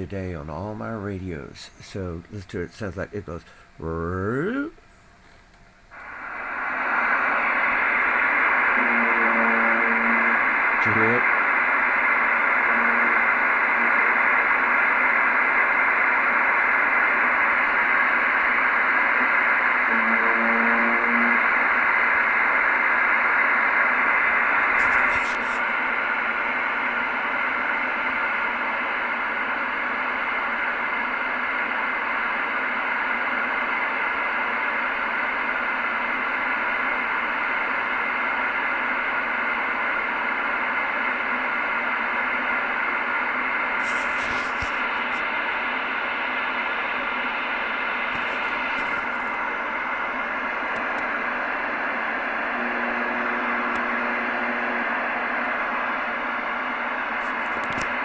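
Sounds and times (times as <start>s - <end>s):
faint steady tones: 0.0s - 58.0s
electrical arcing radio interference: 5.8s - 58.0s.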